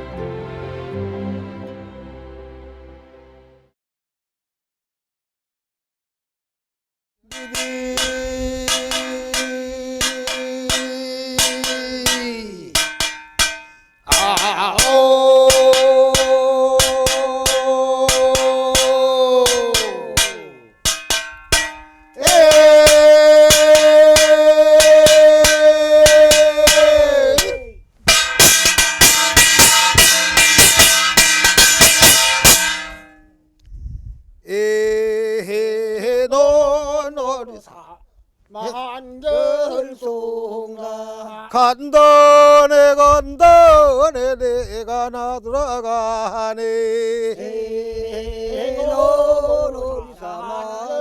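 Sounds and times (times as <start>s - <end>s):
percussion strikes: 7.3s - 33.3s.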